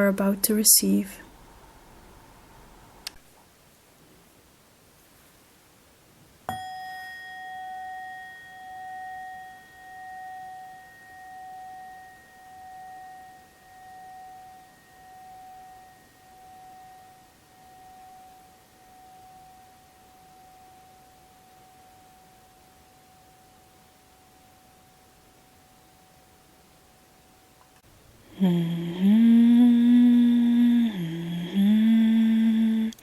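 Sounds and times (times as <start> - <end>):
bell-like instrument ringing: 6.5 - 26.1.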